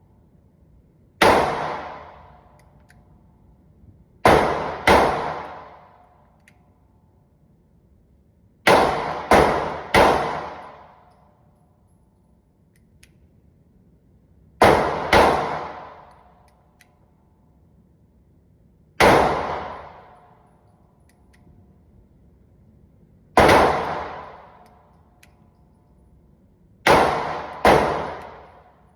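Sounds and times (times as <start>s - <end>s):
pistol shots echoing: 1.2s - 2.6s, 4.2s - 6.0s, 8.7s - 11.1s, 14.6s - 16.3s, 19.0s - 20.2s, 23.4s - 24.6s, 26.8s - 28.9s.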